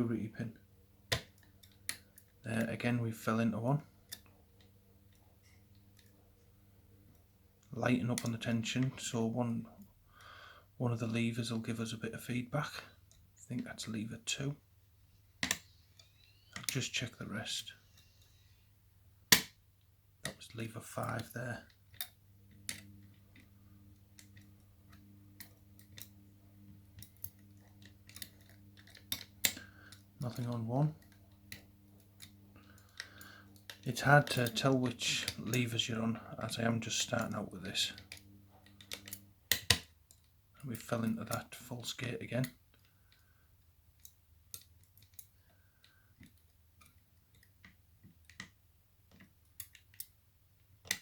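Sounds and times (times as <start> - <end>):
faint metallic lock picking clicks: 37.2 - 40.3, 44.0 - 48.5, 49.1 - 50.2.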